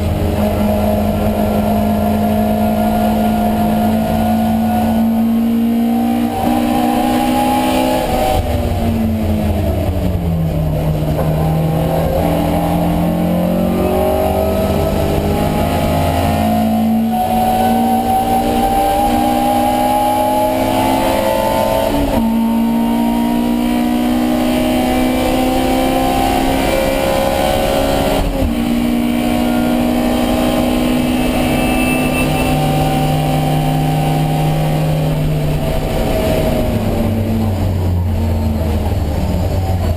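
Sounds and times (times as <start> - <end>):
race car engine at full throttle: 0.0 - 39.9.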